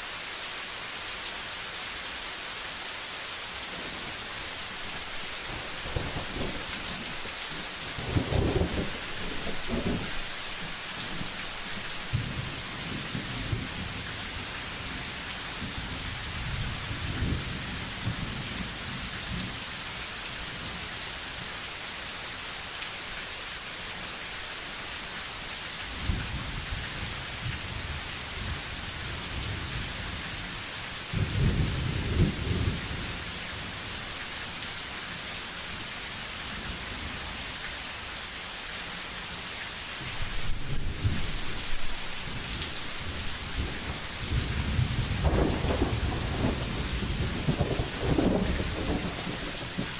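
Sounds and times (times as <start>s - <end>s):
steady rain: 0.0s - 49.9s
low thunder rolls: 40.1s - 49.9s.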